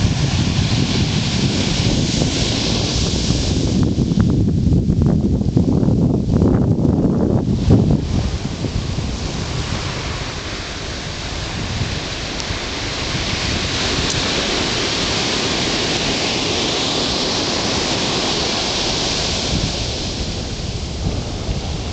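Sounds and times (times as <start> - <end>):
ocean waves washing on beach: 0.0 - 21.9
low rumble: 19.7 - 21.9.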